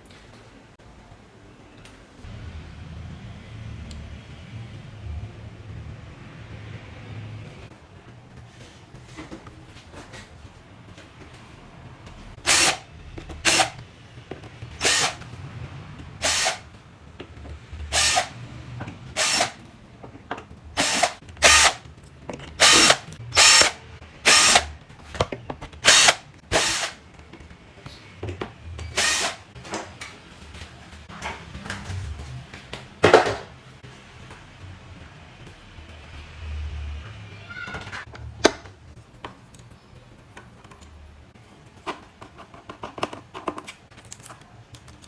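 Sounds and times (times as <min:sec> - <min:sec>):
power drill bursts: 0:12.5 - 0:13.8, 0:14.8 - 0:15.2, 0:16.2 - 0:16.6, 0:17.9 - 0:18.4, 0:19.2 - 0:19.6, 0:20.8 - 0:21.8, 0:22.6 - 0:24.7, 0:25.8 - 0:27.0, 0:28.9 - 0:29.5.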